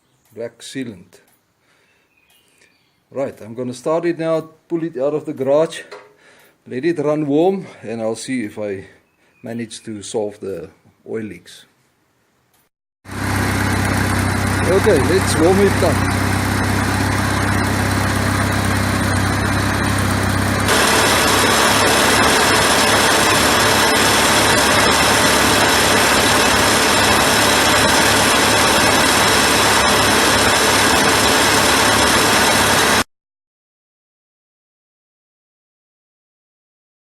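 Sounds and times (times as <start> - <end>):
tractor engine running: 13.1 - 33.0.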